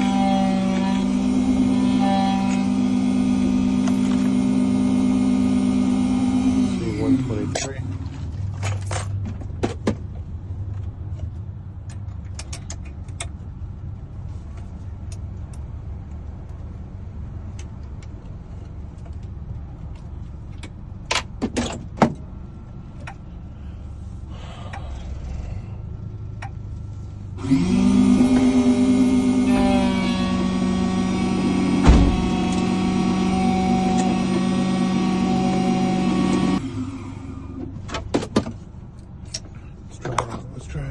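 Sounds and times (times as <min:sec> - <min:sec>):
key-cutting machine motor whine: 0:00.0 - 0:07.6, 0:27.4 - 0:37.5
steady low hum: 0:10.1 - 0:27.4.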